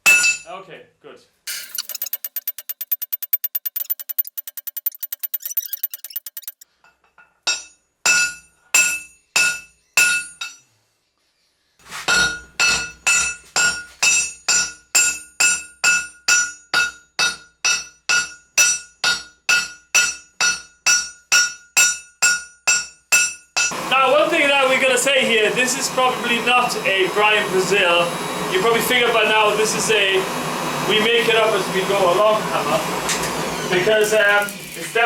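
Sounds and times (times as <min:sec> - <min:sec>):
hammer striking steel on anvil: 0:07.4 - 0:10.6, 0:12.2 - 0:23.8.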